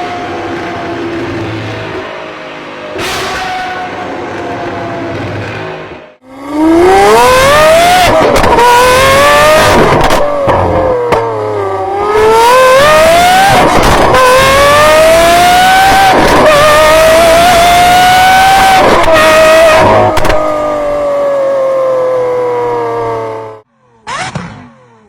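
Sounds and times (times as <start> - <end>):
supercar engine accelerating hard: 4.2 - 25.0.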